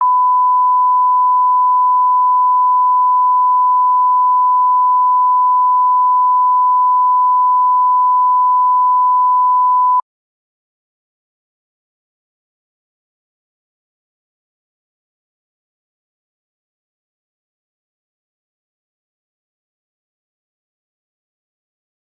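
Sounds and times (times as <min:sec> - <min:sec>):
steady electronic beep: 0:00.0 - 0:10.0.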